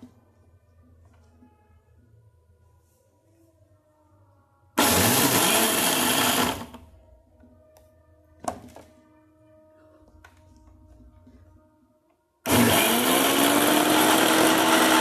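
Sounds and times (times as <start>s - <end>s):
mixer grinder motor grinding: 4.8s - 6.8s, 12.5s - 15.0s.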